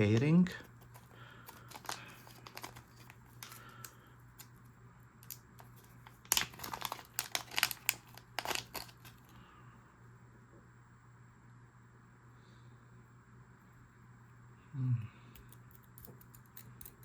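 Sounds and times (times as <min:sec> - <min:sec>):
packaging crinkling and tearing: 0:00.8 - 0:04.0, 0:05.2 - 0:09.3.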